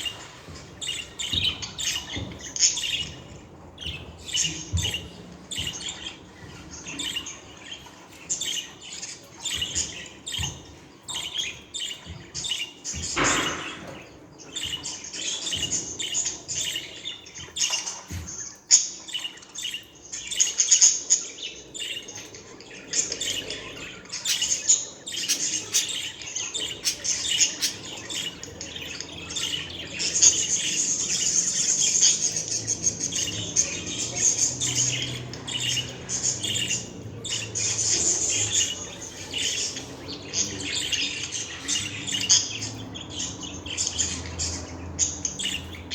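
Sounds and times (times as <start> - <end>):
budgerigars chirping and warbling: 0.0 - 45.9.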